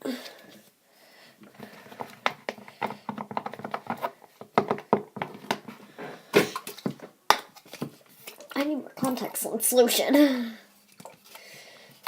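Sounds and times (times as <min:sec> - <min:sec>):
plastic items clicking and tapping: 0:01.4 - 0:09.4.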